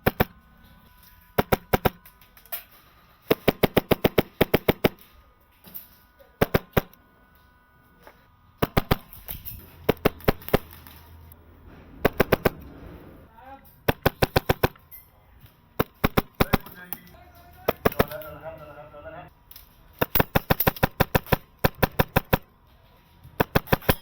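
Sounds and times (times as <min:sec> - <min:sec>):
airsoft rifle firing bursts: 0:00.0 - 0:00.4, 0:01.4 - 0:02.0, 0:03.3 - 0:05.1, 0:06.4 - 0:07.0, 0:08.6 - 0:10.9, 0:12.0 - 0:12.6, 0:13.8 - 0:14.8, 0:15.8 - 0:16.9, 0:17.6 - 0:18.3, 0:20.0 - 0:22.5, 0:23.4 - 0:24.0.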